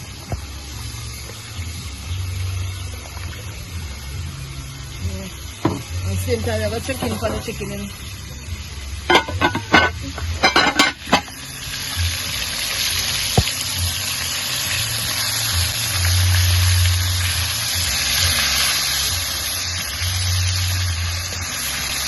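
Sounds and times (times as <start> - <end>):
food sizzling in pot: 3.7 - 22.0
spoon clattering against pot: 9.1 - 11.4.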